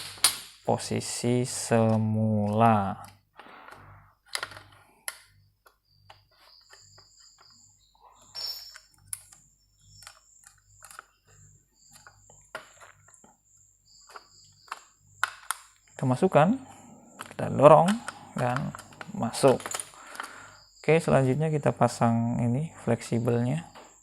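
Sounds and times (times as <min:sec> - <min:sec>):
plastic parts clicking: 0:00.0 - 0:00.6, 0:01.7 - 0:07.6, 0:08.2 - 0:13.3, 0:14.0 - 0:16.0, 0:17.2 - 0:20.5.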